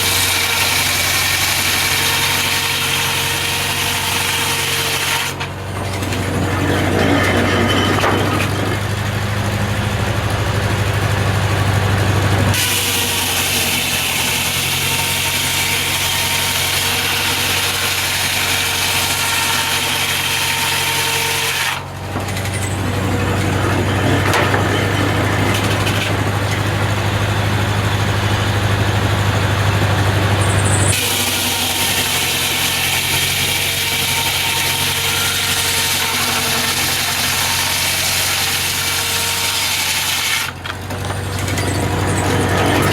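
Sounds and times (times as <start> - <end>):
engine hum: 5.3 - 19.3, 21.7 - 39.6, 40.4 - 42.9.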